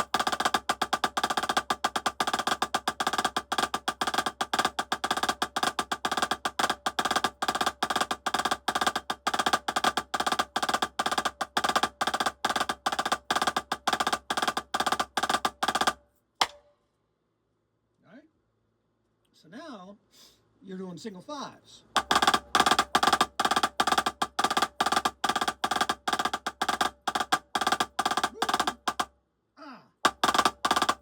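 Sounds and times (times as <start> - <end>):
drumsticks playing fast strokes: 0.0 - 16.6, 22.0 - 29.1, 30.1 - 31.0.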